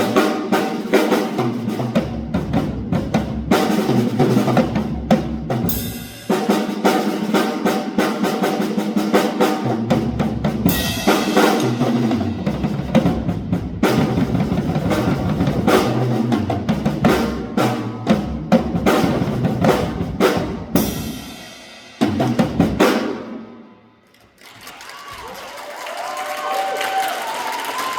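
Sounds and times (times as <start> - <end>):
drum kit playing: 0.0 - 23.8.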